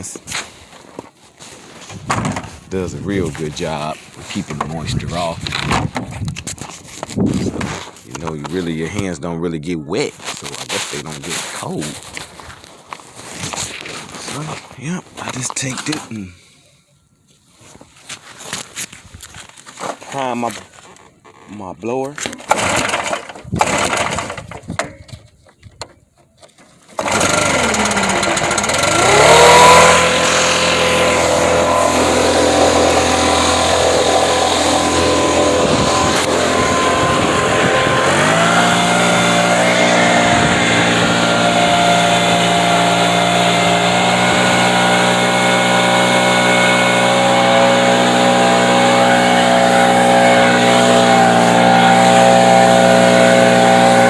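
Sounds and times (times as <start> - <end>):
leaf blower engine running: 22.5 - 24.6, 27.0 - 54.0.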